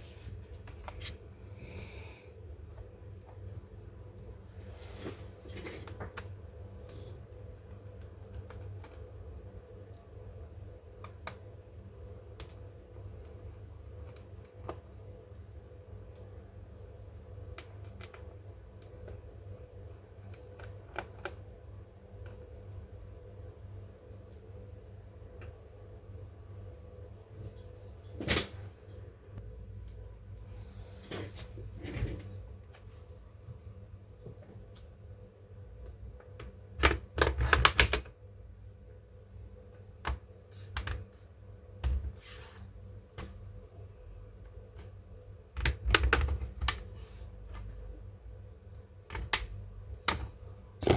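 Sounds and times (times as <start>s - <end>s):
steady low hum: 0.0s - 37.2s.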